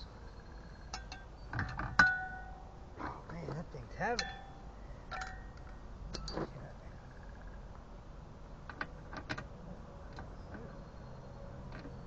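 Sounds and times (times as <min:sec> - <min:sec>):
metal tools clicking and clinking: 0:05.1 - 0:06.4.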